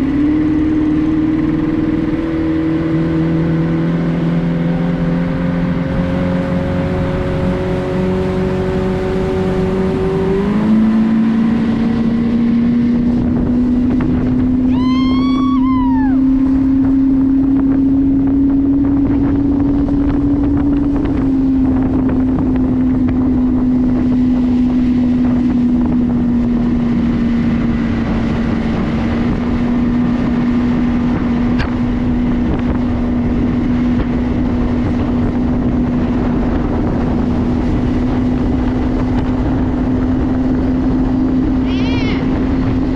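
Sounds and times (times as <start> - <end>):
motorboat engine running: 0.0 - 42.9
short high call: 41.6 - 42.4.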